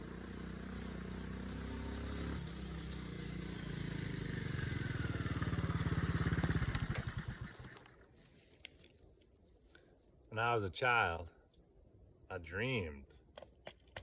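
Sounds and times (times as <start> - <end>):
small motorcycle engine putt-putt: 0.0 - 8.0.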